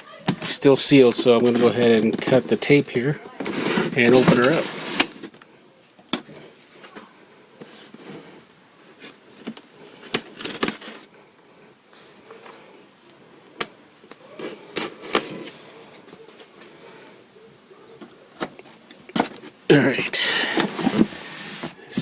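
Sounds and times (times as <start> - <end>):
tape tearing: 9.9 - 11.1, 14.1 - 15.6.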